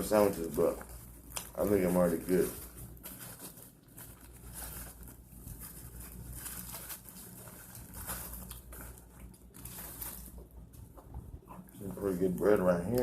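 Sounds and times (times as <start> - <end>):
steady low hum: 0.0 - 13.0
person chewing food: 7.3 - 12.0.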